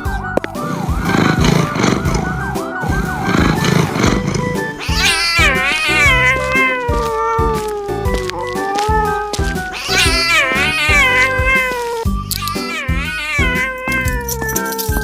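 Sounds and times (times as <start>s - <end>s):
background music: 0.0s - 15.0s
cat meowing: 3.2s - 15.0s
siren wailing yelp: 4.7s - 14.3s.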